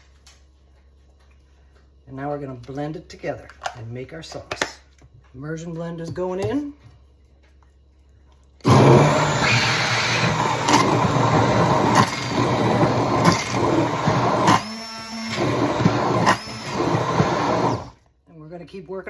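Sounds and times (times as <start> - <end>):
blade churning thick mixture: 8.6 - 18.0
immersion blender motor whine: 8.6 - 18.0.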